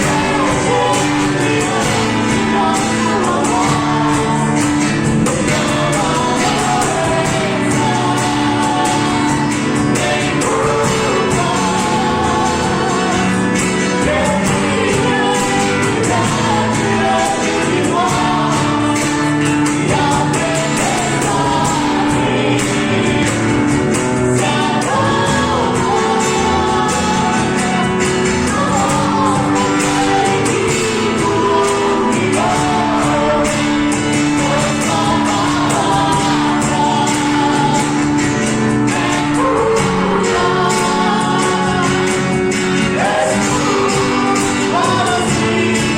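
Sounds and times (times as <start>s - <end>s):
gospel song with band: 0.0s - 45.9s.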